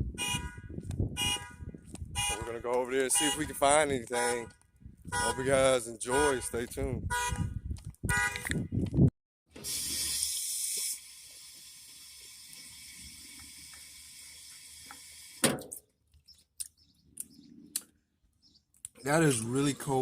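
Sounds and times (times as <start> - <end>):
water running from a tap: 9.7 - 15.4.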